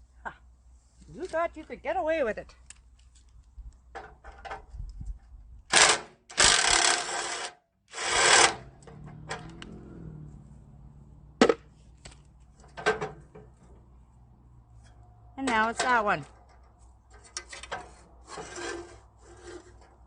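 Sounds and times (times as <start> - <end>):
power impact tool bursts: 5.7 - 8.6.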